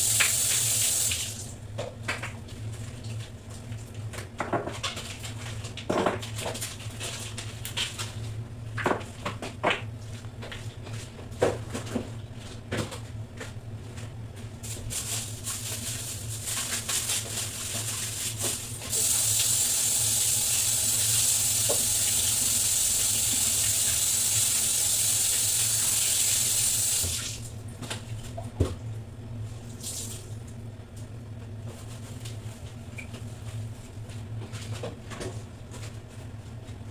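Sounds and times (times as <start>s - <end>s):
tap running into sink: 0.0s - 1.4s, 18.9s - 27.4s
knocks and clatter of objects: 4.2s - 8.0s.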